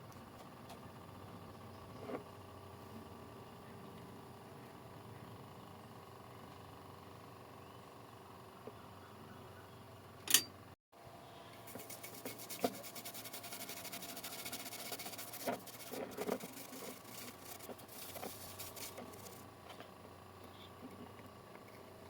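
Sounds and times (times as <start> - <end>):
fast scraping: 11.6 - 19.4.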